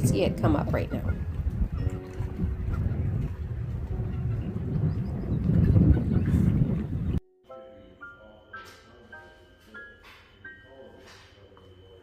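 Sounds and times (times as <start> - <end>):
soft music with mallet notes: 0.0 - 5.5, 7.4 - 12.0
wind buffeting microphone: 0.0 - 7.2.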